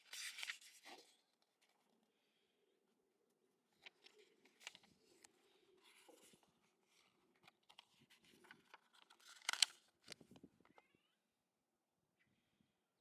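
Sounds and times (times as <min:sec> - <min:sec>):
rustling and clicks: 0:07.4 - 0:10.9.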